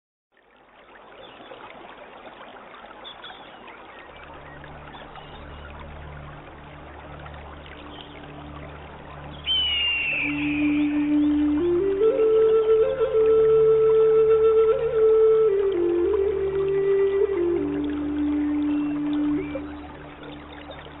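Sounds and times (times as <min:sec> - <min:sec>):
stream water trickling: 0:00.3 - 0:21.0
low music drone: 0:04.2 - 0:21.0
faint bird chirps: 0:09.3 - 0:11.4
high flute note: 0:09.4 - 0:20.3.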